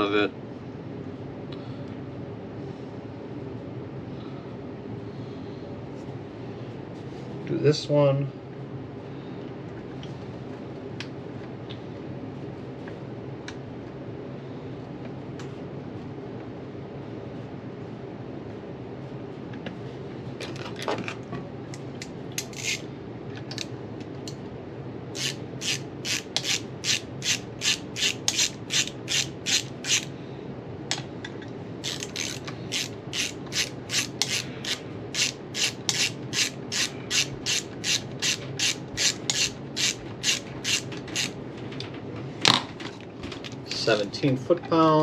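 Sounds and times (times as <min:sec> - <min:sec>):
ratchet wrench clicking: 0:22.4 - 0:22.8, 0:25.2 - 0:30.1, 0:31.8 - 0:41.4.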